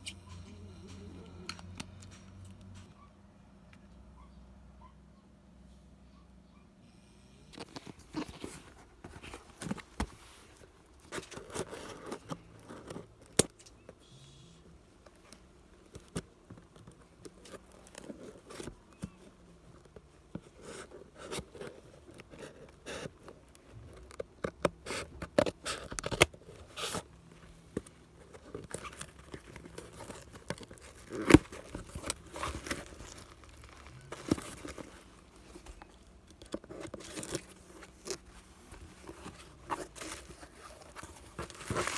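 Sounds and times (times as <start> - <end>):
paper and plastic crinkling: 7.6 - 13.8, 14.8 - 41.9.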